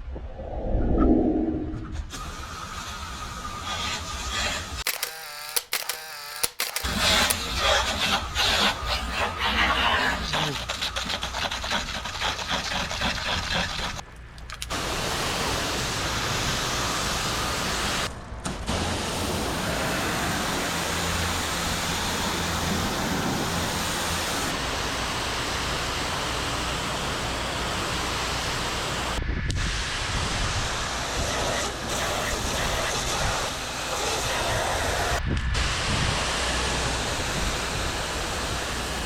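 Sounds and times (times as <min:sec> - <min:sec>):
high-pressure water spray hissing: 0:14.7 - 0:18.1, 0:18.7 - 0:39.0
pressure washer machine hum: 0:14.7 - 0:18.1, 0:18.7 - 0:29.2.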